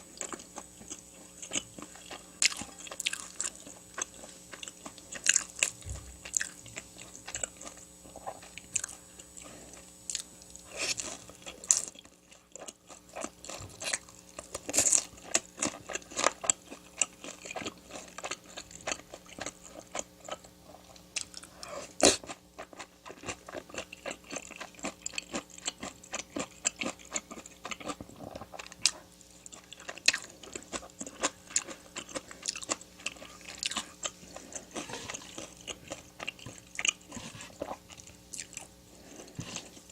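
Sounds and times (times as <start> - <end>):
person chewing and crunching: 0.0 - 39.9.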